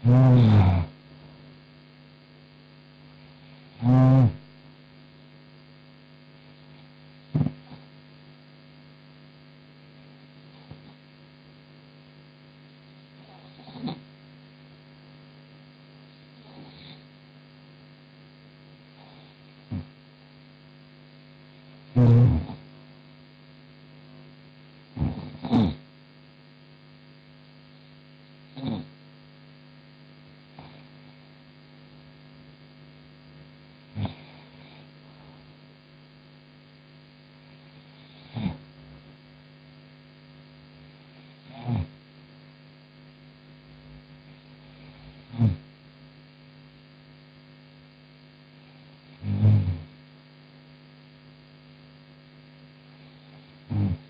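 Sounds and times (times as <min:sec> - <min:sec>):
woman snoring: 0:00.0 - 0:01.0, 0:03.4 - 0:04.5, 0:07.3 - 0:07.9, 0:10.5 - 0:11.0, 0:13.2 - 0:14.1, 0:16.4 - 0:17.1, 0:18.9 - 0:20.0, 0:21.9 - 0:22.7, 0:24.9 - 0:25.9, 0:28.5 - 0:28.9, 0:30.5 - 0:31.2, 0:33.9 - 0:35.6, 0:37.5 - 0:39.0, 0:41.0 - 0:42.0, 0:44.3 - 0:45.7, 0:48.6 - 0:50.0, 0:52.9 - 0:54.0
steady electrical hum: 0:00.0 - 0:54.0.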